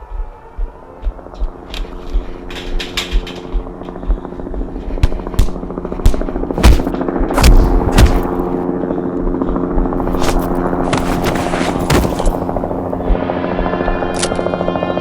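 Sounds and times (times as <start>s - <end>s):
music with droning chord: 0.0s - 15.0s
punch sound effects: 6.1s - 8.5s.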